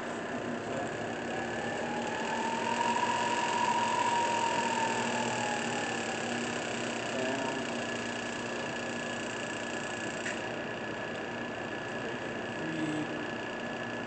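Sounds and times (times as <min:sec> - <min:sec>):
rising and falling whine: 0:00.0 - 0:10.4
milling machine hum: 0:00.0 - 0:14.0.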